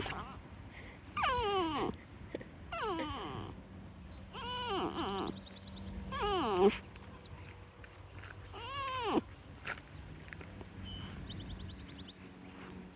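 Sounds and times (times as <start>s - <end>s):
pet animal crying: 1.1s - 2.0s, 2.7s - 3.6s, 4.3s - 5.4s, 6.1s - 6.8s, 8.5s - 9.3s.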